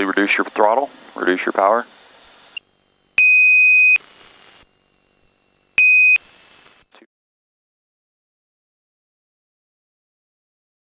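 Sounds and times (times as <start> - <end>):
intercom hiss: 0.0 - 2.6
electronic beeps: 2.5 - 4.0, 5.4 - 6.2.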